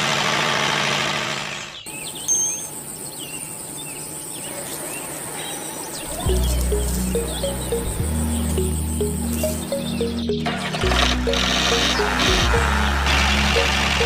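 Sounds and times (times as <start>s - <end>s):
loud steady mechanical noise: 0.0s - 1.9s, 10.4s - 14.0s
birds chirping: 1.5s - 14.0s
music with low bass line: 6.3s - 14.0s.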